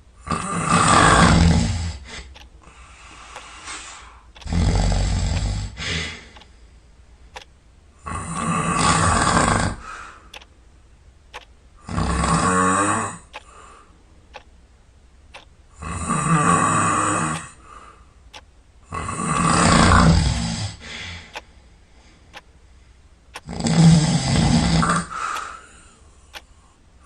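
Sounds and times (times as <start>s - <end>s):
quiet breaths: 0.0s - 10.6s, 11.3s - 14.6s, 15.3s - 27.0s
person snoring: 0.2s - 3.8s, 4.4s - 6.4s, 8.0s - 10.0s, 11.8s - 13.7s, 15.8s - 17.8s, 18.9s - 21.4s, 23.4s - 25.6s.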